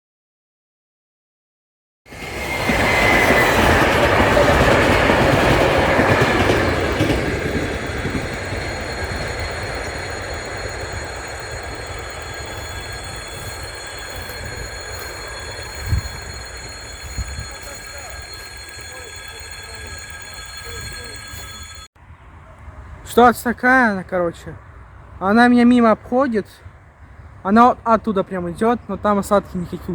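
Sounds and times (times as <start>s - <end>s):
faint high tones: 2.5s - 21.9s.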